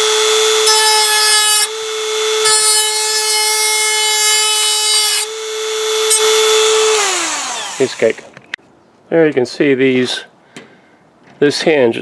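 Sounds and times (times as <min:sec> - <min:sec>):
rotary tool whining: 0:00.0 - 0:08.4.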